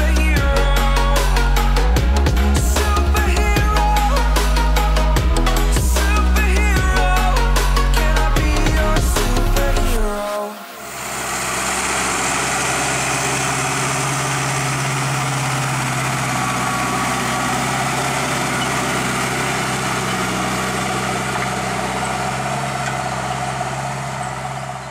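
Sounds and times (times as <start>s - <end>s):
diesel engine running: 0.0s - 24.9s.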